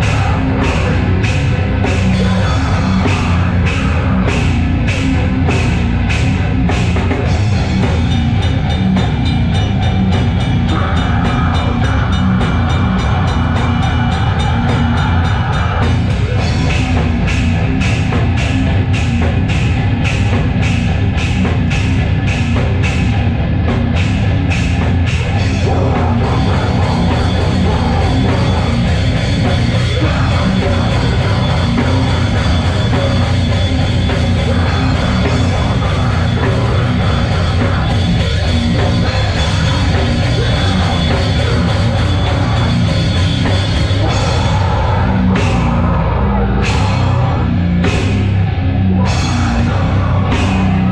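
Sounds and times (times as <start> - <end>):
fast drum and cymbal strikes: 0.0 - 44.7
heavy metal band playing live: 0.0 - 50.9.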